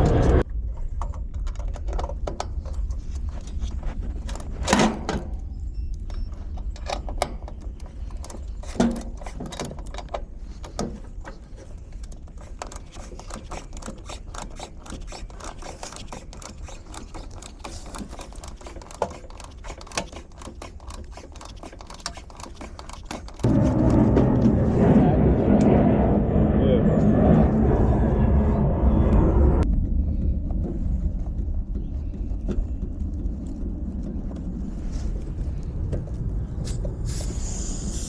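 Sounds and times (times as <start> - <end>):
steady low hum: 0.0 - 1.4, 23.4 - 38.0
small mechanical clicks: 12.1 - 23.5.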